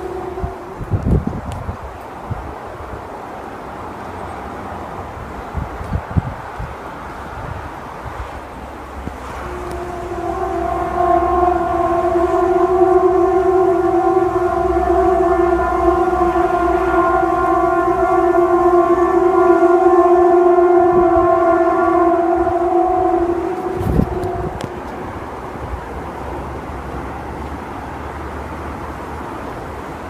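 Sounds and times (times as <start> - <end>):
loud horn-like drone: 0.0 - 2.0, 8.8 - 29.5.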